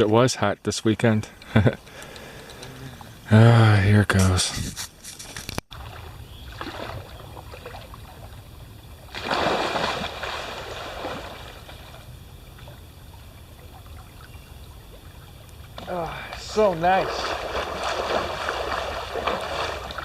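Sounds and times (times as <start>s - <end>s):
water sloshing: 4.7s - 20.0s
person splashing in river: 5.7s - 8.3s, 9.1s - 12.0s, 15.8s - 20.0s.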